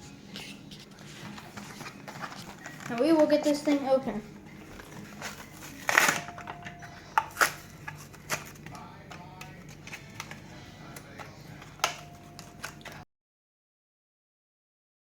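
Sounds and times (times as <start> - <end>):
plastic packaging tearing: 0.4 - 3.8, 4.7 - 6.5, 7.1 - 13.0.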